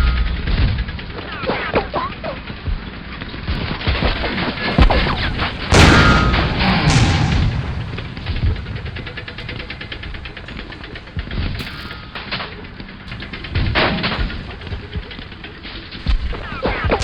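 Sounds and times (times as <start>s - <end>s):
rapid gunfire rattle: 3.5s - 17.0s
scattered gunshots: 4.0s - 17.0s
loud cannon boom: 4.7s - 12.2s.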